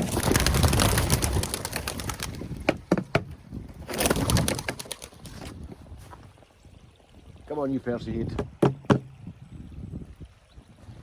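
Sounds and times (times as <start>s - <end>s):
pigeon wings flapping: 0.0s - 2.8s, 3.8s - 5.5s.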